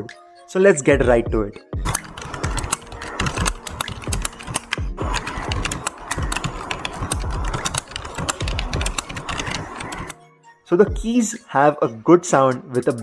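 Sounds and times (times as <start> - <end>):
keyboard key clicks: 1.9 - 10.2.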